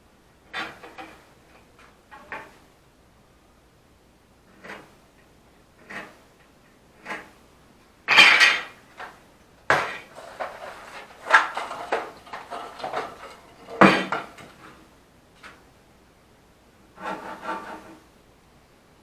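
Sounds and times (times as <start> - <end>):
metal objects clattering: 8.1 - 14.8.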